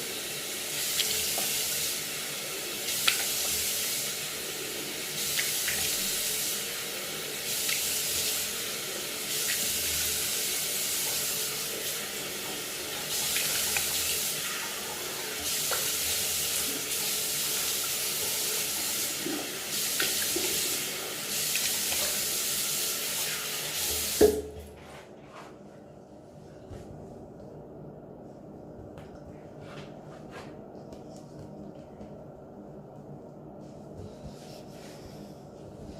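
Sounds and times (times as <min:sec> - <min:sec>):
tap water running into sink: 0:00.2 - 0:02.2, 0:02.8 - 0:04.3, 0:05.0 - 0:24.5.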